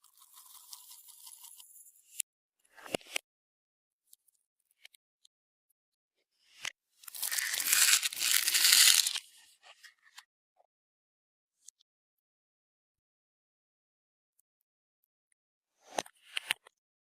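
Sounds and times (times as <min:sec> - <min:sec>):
slime crackly crunching: 0:07.1 - 0:09.2.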